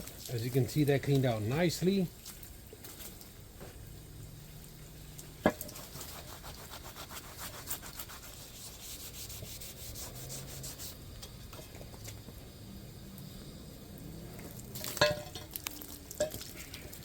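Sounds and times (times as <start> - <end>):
rubbing and scraping on steel: 5.4 - 11.3.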